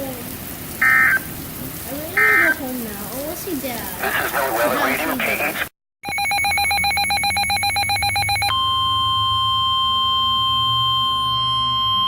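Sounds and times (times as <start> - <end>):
steady warning alarm tone: 0.8 - 1.2, 6.0 - 12.0
rapidly pulsing electronic beep: 6.0 - 12.0.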